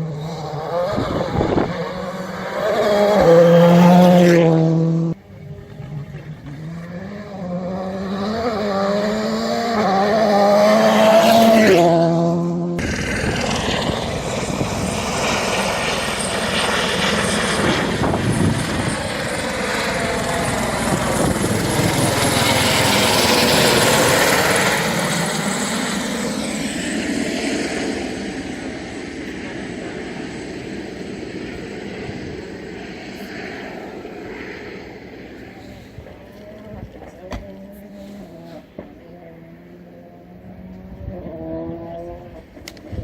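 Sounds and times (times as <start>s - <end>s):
helicopter passing overhead: 0.0s - 43.0s.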